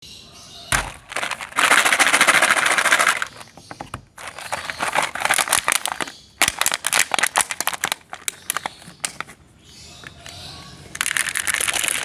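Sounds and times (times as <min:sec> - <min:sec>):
candies crunching in a grinder: 0:00.8 - 0:03.5, 0:04.2 - 0:08.8, 0:11.0 - 0:12.0.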